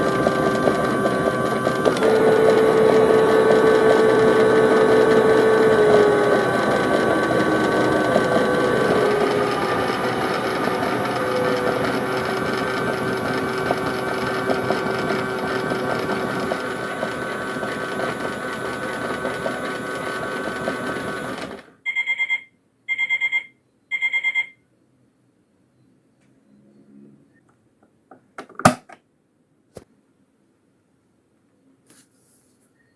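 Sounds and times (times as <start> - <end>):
toy washing machine motor whirring: 0.0 - 21.7
short electronic beeps: 21.9 - 24.6.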